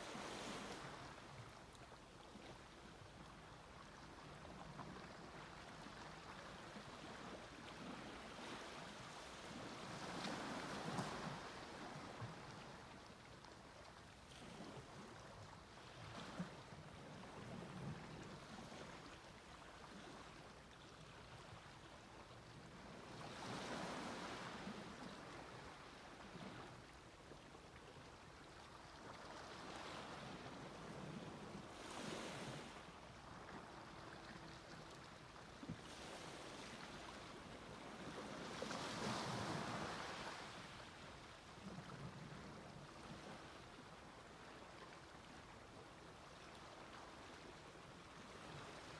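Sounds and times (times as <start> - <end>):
sea waves breaking on beach: 31.7 - 32.9, 35.8 - 40.9.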